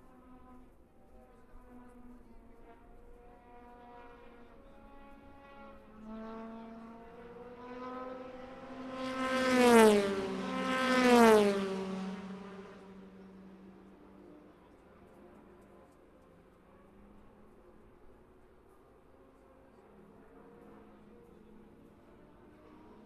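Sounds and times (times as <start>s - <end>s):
race cars passing at speed: 3.8s - 15.0s, 19.9s - 23.0s.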